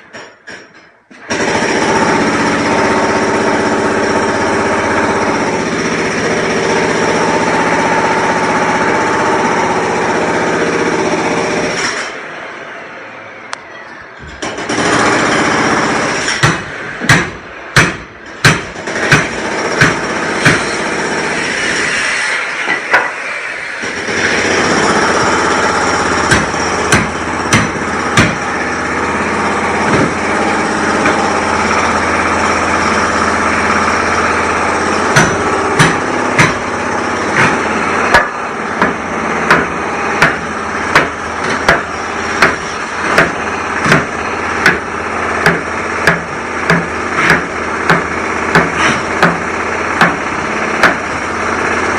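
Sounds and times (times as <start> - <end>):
machine engine droning: 1.4 - 13.7, 19.0 - 51.9
hammer striking: 16.2 - 20.9, 26.2 - 28.6, 29.8 - 30.3, 35.1 - 51.1.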